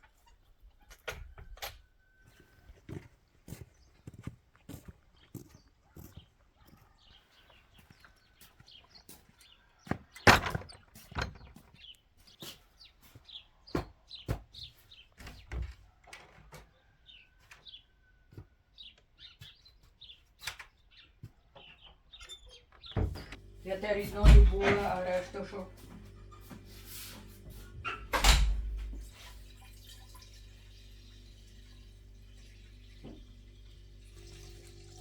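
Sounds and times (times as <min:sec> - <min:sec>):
knocks and thuds: 0:24.2 - 0:25.0.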